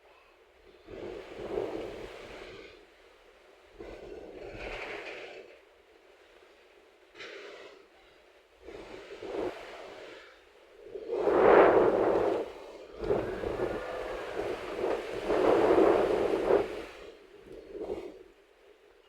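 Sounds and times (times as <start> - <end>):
wind buffeting microphone: 8.7 - 10.2, 10.8 - 18.3.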